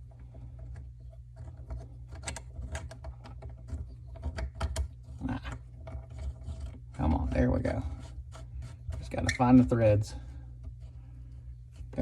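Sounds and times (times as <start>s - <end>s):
steady low hum: 0.0s - 12.0s
nut clicking and scraping on pipe: 0.1s - 7.4s.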